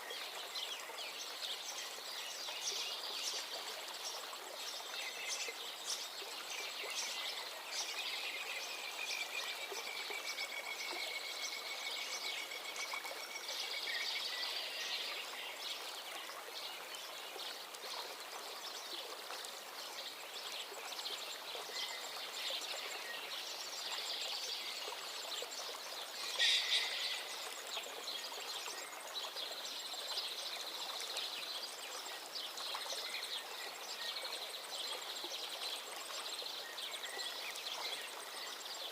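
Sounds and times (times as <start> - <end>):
small birds chirping and trilling: 19.9 - 38.9
long falling whistled bird call: 26.2 - 27.6.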